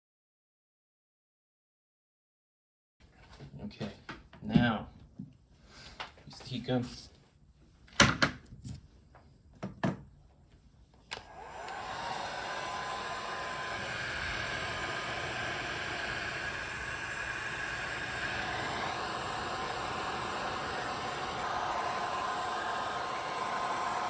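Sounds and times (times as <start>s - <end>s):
heat gun blowing hiss: 11.2s - 24.0s.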